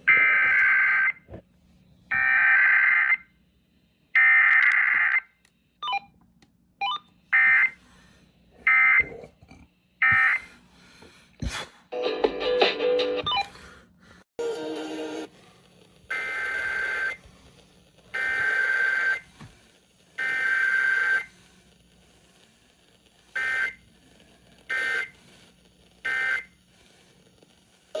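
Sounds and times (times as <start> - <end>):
two-tone modem-like data bursts: 23.3 - 23.9, 24.7 - 25.2, 26.1 - 26.6.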